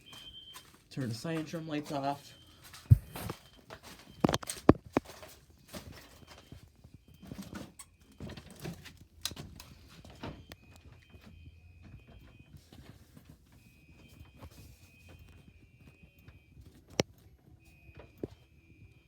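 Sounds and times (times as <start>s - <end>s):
faint high fire alarm tone: 0.0s - 19.0s
footsteps on hard floor: 2.8s - 3.5s.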